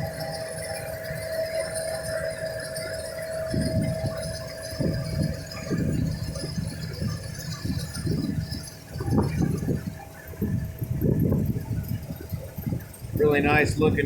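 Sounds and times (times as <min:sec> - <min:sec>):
combine harvester running: 0:00.0 - 0:14.0
low thumps and rattles: 0:04.8 - 0:12.9.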